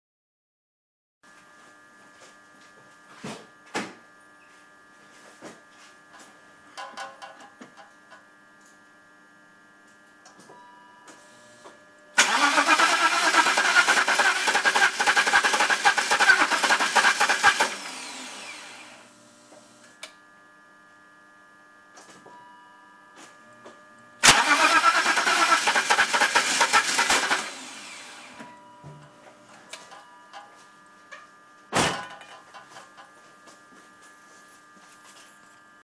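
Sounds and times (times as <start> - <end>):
loud mechanical motor noise: 11.3 - 20.0, 23.5 - 29.6.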